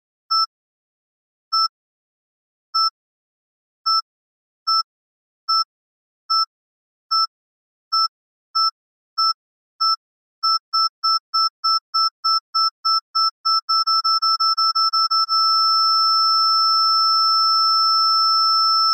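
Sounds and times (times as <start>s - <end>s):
electronic timer beeping: 7.9s - 18.9s.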